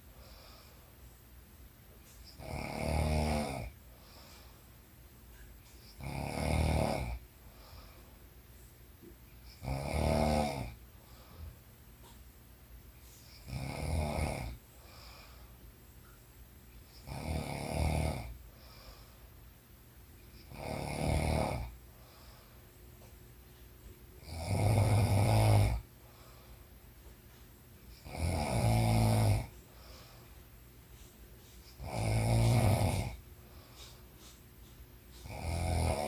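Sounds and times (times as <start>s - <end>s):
woman snoring: 2.3s - 3.8s, 5.9s - 7.2s, 9.5s - 10.8s, 13.3s - 14.6s, 17.0s - 18.4s, 20.4s - 21.8s, 24.2s - 25.9s, 27.9s - 29.5s, 31.7s - 33.2s, 35.2s - 36.0s.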